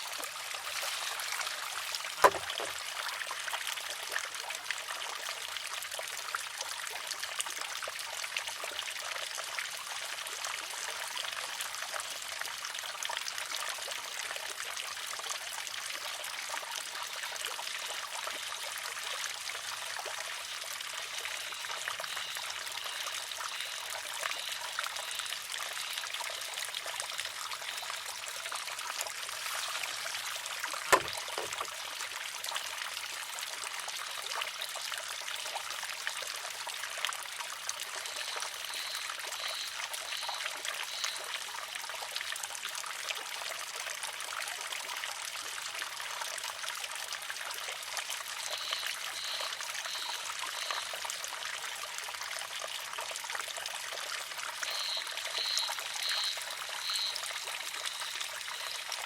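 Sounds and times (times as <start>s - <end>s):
water trickling and pouring: 0.0s - 59.0s
wooden arm clacking on rock: 2.1s - 2.8s, 30.8s - 31.8s.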